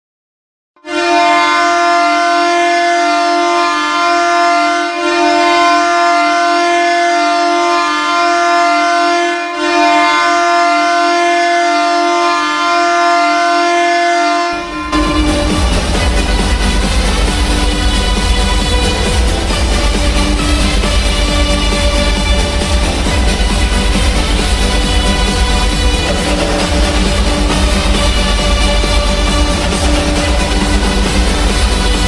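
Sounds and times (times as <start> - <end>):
goal horn low chord: 0.8 - 32.0
electronic song: 14.5 - 32.0.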